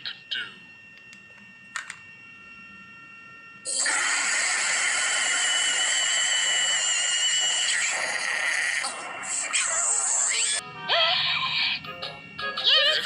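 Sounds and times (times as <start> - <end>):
loud hiss with high whistle: 3.7 - 10.6.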